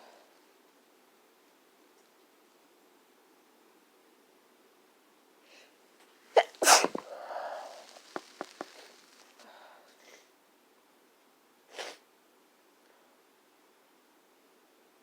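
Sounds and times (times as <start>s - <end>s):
person sneezing: 6.4s - 8.8s.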